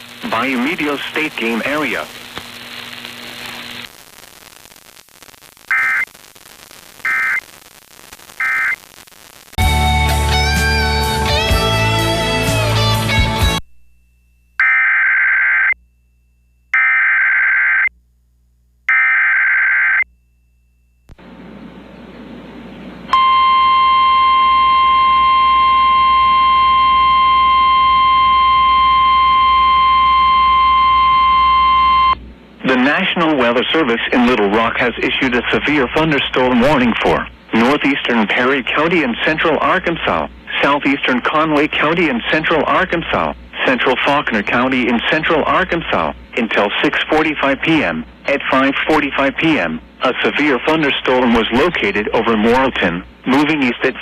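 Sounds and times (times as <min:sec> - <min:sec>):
faint radio static: 0:00.0 - 0:09.6, 0:24.1 - 0:54.0
harsh buzzy data chirps: 0:00.0 - 0:09.6, 0:14.6 - 0:15.8, 0:16.7 - 0:17.9, 0:18.9 - 0:20.1.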